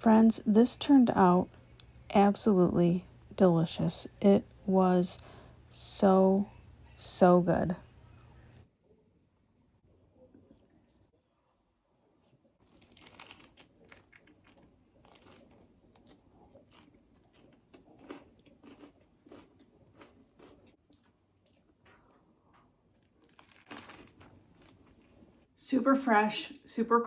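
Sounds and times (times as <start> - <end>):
person chewing crunchy food: 12.6 - 25.4.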